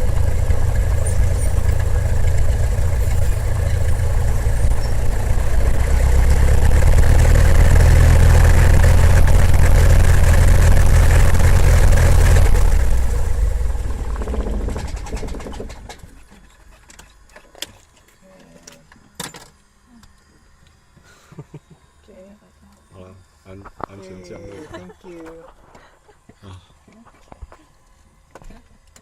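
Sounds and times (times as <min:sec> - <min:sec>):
propeller airplane engine drone: 0:00.0 - 0:17.4.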